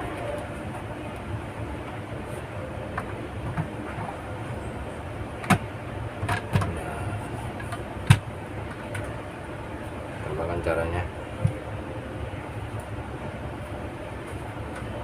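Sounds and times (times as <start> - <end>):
low background hum: 0.0 - 15.0
clicks and knocks on computer casing: 6.2 - 6.7.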